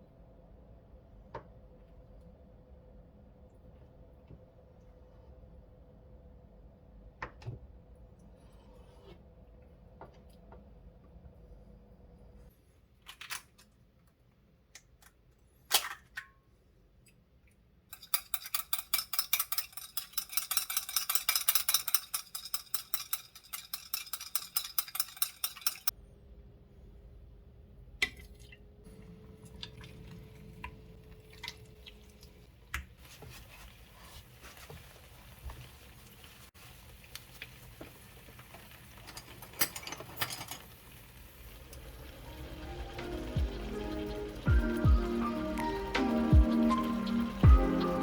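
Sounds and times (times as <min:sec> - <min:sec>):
utensils clinking against dishes: 0:17.9 - 0:25.9
low hum: 0:41.7 - 0:48.0.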